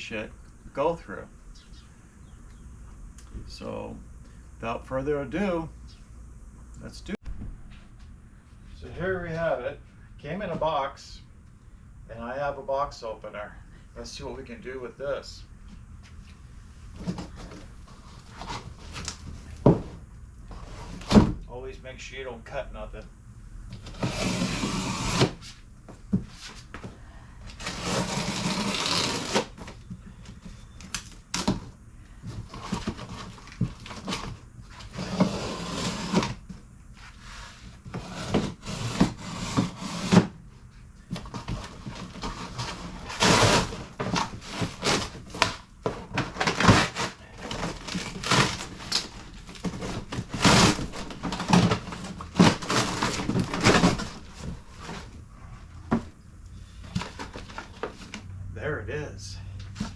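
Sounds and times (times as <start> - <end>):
box cutter cutting cardboard: 23.8 - 25.6, 27.5 - 29.8, 32.5 - 36.4, 37.3 - 40.4, 41.2 - 55.1
packing tearing and rustling: 27.5 - 29.8, 41.2 - 55.2.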